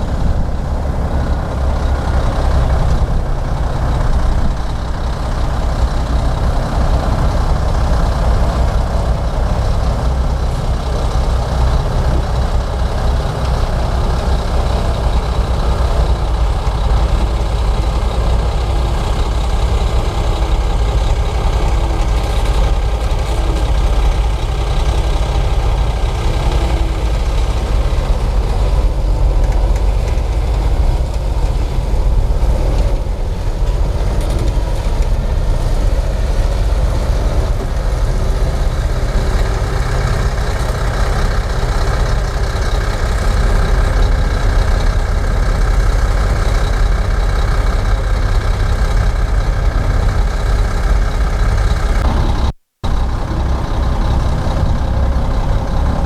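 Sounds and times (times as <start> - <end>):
bulldozer diesel engine running: 0.0 - 56.0.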